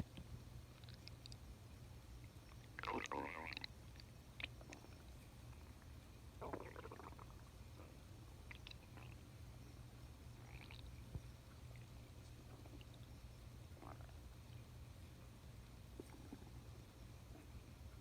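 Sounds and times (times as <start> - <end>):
steady low hum: 0.0 - 18.0
stomach growling: 2.5 - 9.2, 10.4 - 13.1, 13.7 - 14.4, 15.9 - 16.6.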